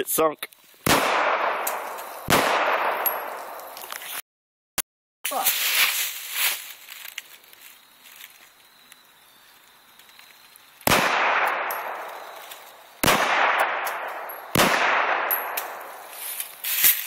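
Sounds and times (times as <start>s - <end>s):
pistol shots echoing: 0.8s - 3.6s, 10.8s - 12.4s, 13.0s - 16.1s.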